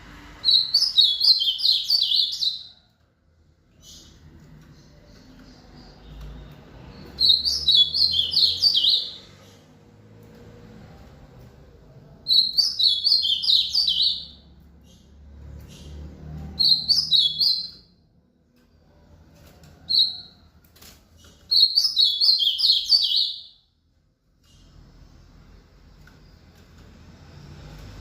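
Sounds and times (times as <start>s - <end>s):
bird singing chirping phrases: 0.5s - 2.7s, 3.8s - 9.8s, 12.3s - 17.9s, 21.2s - 23.6s.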